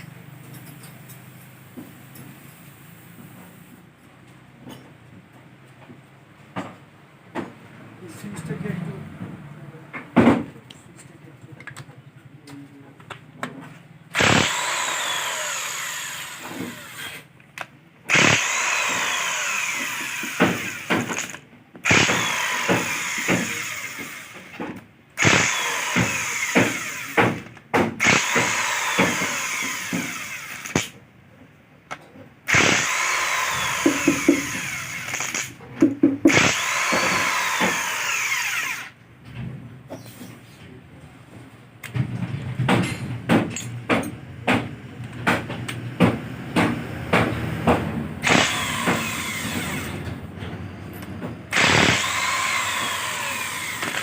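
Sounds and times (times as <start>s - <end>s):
power tool whining: 14.1s - 17.3s, 18.1s - 24.6s, 25.2s - 31.0s, 32.5s - 35.6s, 36.3s - 39.0s, 48.2s - 50.2s, 51.0s - 54.0s.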